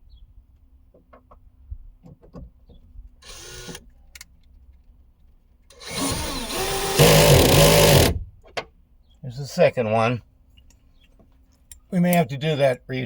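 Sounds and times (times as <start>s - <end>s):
power tool motor running: 3.2s - 3.8s, 5.7s - 8.2s.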